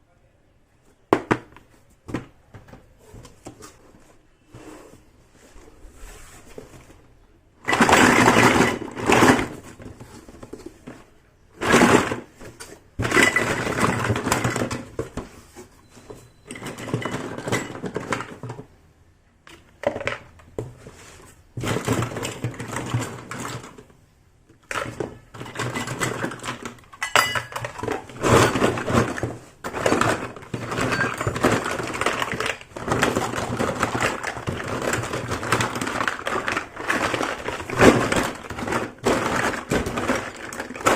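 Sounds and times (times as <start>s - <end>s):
toy pieces clattering: 7.7s - 9.6s, 24.7s - 40.9s
packaging rustling: 25.1s - 40.9s.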